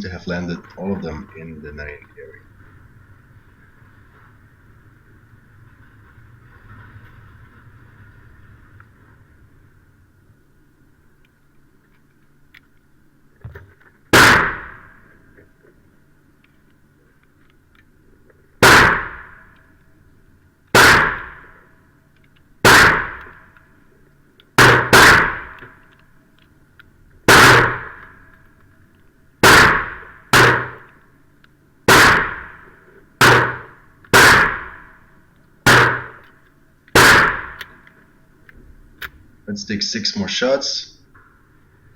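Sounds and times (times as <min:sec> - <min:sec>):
pistol shots: 0:14.1 - 0:15.1, 0:18.6 - 0:19.6, 0:20.7 - 0:21.6, 0:22.6 - 0:23.5, 0:24.6 - 0:25.8, 0:27.3 - 0:28.2, 0:29.4 - 0:30.9, 0:31.9 - 0:35.0, 0:35.6 - 0:36.3, 0:36.9 - 0:37.8.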